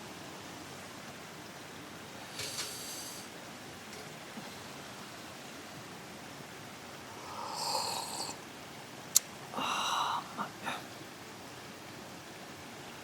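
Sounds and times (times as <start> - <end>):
slurping sips of hot drink: 7.3 - 8.4
sharp click: 9.1 - 9.3.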